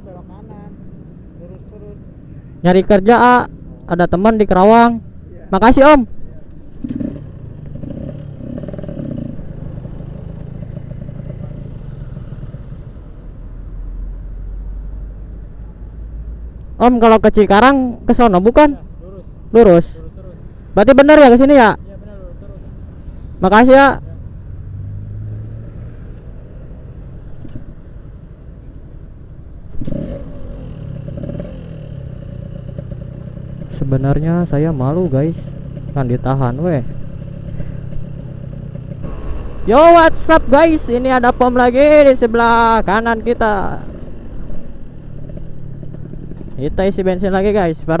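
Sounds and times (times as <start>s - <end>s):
road noise: 0.0s - 48.0s
motorcycle engine running: 6.8s - 13.0s, 29.8s - 48.0s.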